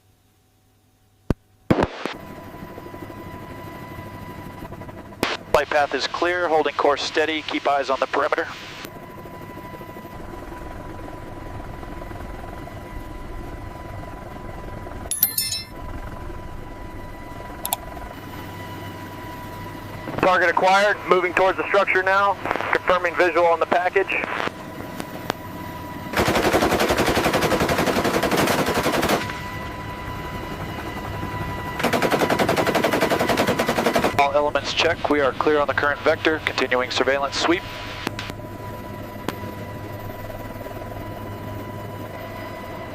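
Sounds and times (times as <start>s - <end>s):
aircraft rumble in flight: 2.2s - 42.9s
thin high tone: 15.1s - 15.8s
high-pitched hum: 15.1s - 16.2s
rotary machine gun burst: 26.2s - 29.2s.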